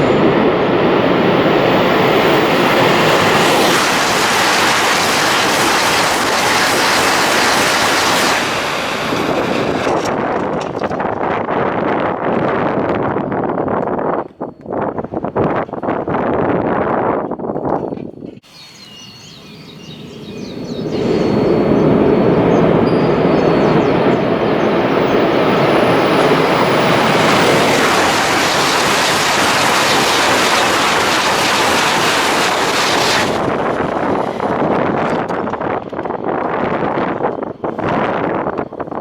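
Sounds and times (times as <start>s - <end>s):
high-speed train passing: 0.0s - 12.2s, 18.4s - 39.0s.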